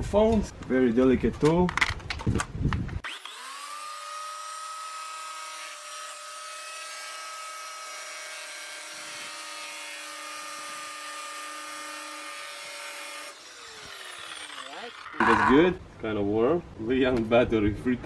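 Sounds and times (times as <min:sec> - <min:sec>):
power tool motor high whine: 0:03.0 - 0:15.3.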